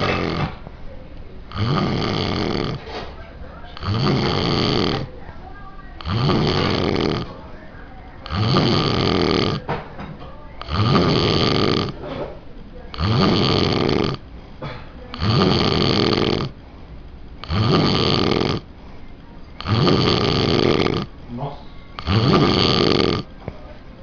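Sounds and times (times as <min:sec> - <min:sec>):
person snoring heavily: 0:00.0 - 0:00.6, 0:01.5 - 0:02.8, 0:03.8 - 0:05.1, 0:06.0 - 0:07.3, 0:08.2 - 0:09.7, 0:10.6 - 0:12.0, 0:12.9 - 0:14.2, 0:15.1 - 0:16.6, 0:17.4 - 0:18.7, 0:19.6 - 0:21.1, 0:22.0 - 0:23.3
quiet breaths: 0:00.0 - 0:24.0.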